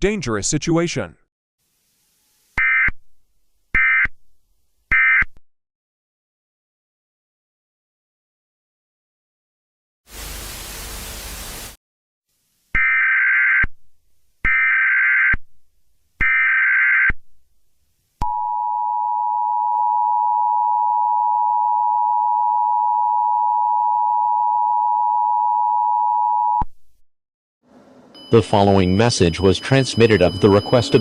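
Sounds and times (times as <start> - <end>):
static hiss burst: 10.1 - 11.8
two-tone alert signal: 28.2 - 31.0
screeching digital data bursts: 28.3 - 31.0.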